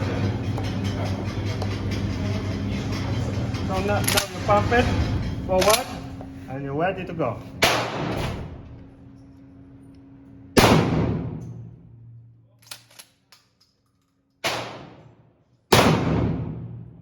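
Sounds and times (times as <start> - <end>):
shotgun shots echoing: 7.6 - 8.2, 10.6 - 11.4, 14.4 - 15.1, 15.7 - 16.8.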